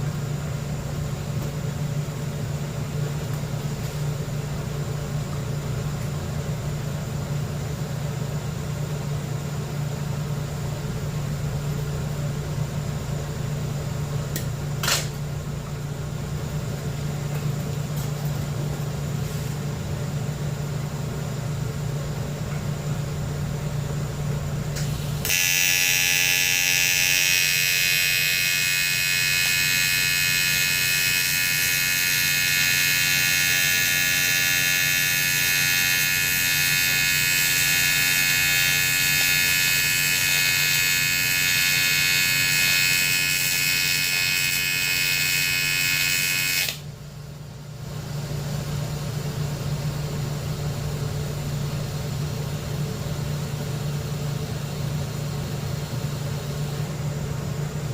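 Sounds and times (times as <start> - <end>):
welding machine hum: 23.2 - 46.9
welding arc: 24.8 - 46.8.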